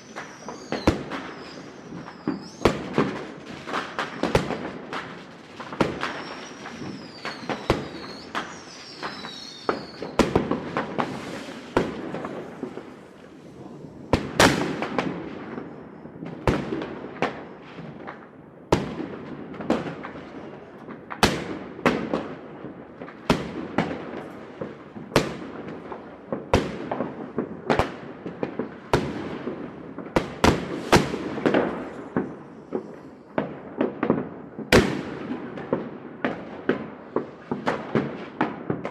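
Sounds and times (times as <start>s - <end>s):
firework whistle: 0.0s - 16.2s, 30.5s - 33.3s
fireworks banging and crackling: 0.0s - 38.9s.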